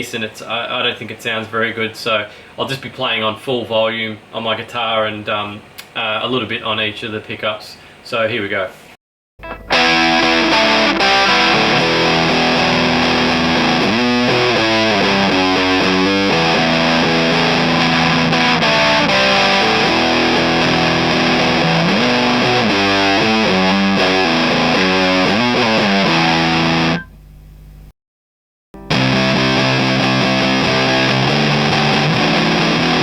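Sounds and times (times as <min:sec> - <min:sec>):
fuzzed electric guitar riffs: 0:09.4 - 0:27.1, 0:28.8 - 0:33.0.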